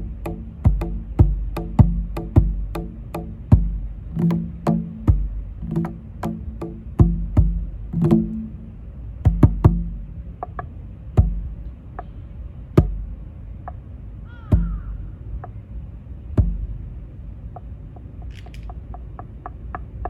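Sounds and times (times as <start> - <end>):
goblet drum played by hand: 0.0 - 11.6, 12.8 - 13.2, 14.5 - 14.9, 16.4 - 16.7.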